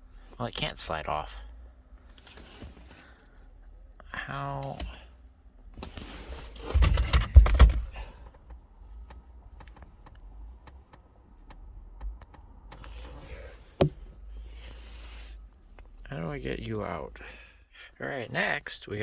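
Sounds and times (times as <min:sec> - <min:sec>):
metal and plastic parts rattling: 0:05.8 - 0:08.5.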